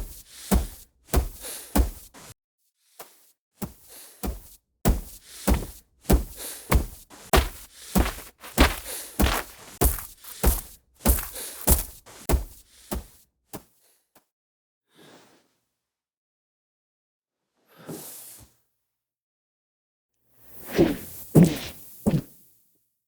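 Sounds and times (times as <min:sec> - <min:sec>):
woman's footsteps: 0:03.6 - 0:13.1.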